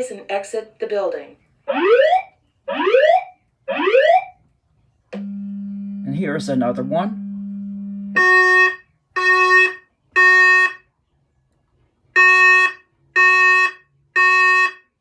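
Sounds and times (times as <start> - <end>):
steady low hum: 4.6 - 9.3
fire alarm beeps: 7.2 - 10.8, 12.2 - 14.9.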